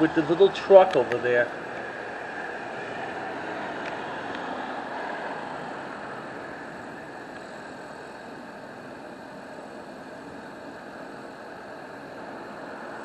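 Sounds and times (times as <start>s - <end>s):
motor vehicle noise: 0.0s - 10.0s.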